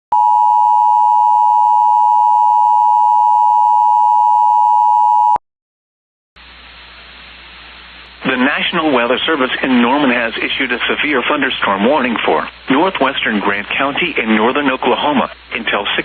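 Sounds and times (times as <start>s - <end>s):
faint radio hiss: 6.4s - 16.0s.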